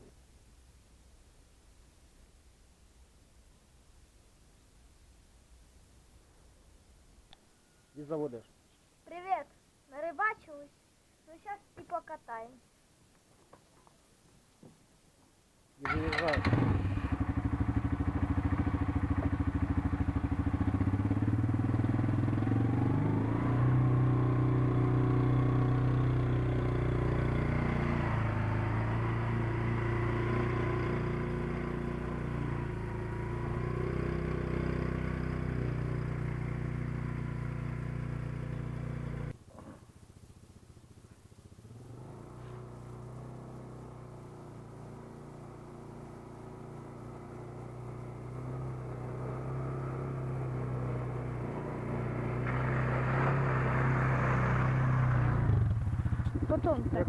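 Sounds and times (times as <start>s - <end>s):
quad bike engine revving: 15.8s - 39.9s, 41.6s - 57.0s.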